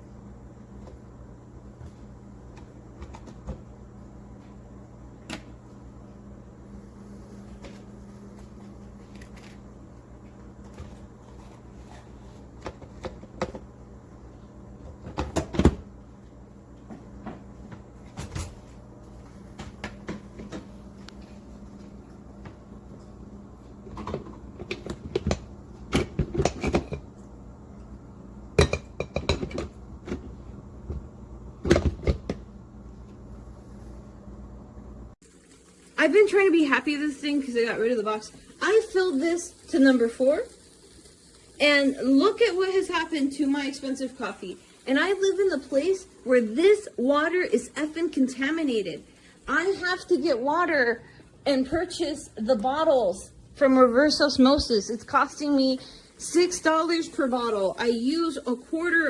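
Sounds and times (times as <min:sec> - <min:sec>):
steady low hum: 0:00.0 - 0:59.0
kitchenware knocking and clattering: 0:28.6 - 0:30.2.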